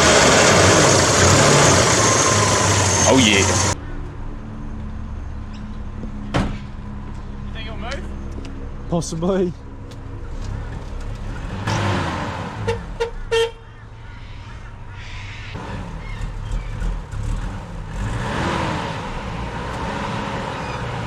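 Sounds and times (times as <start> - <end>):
petrol engine revving: 0.0 - 3.8, 10.6 - 13.0, 15.6 - 21.0.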